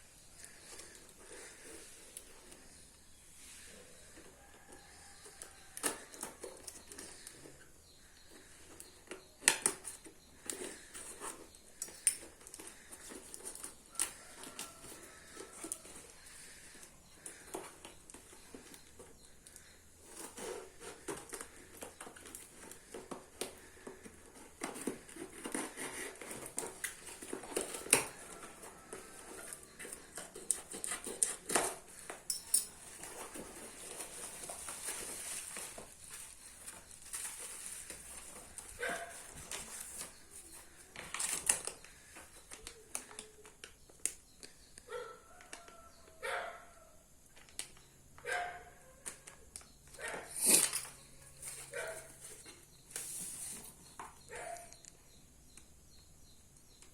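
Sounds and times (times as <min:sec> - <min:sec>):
packaging rustling and clicking: 0:04.1 - 0:44.8.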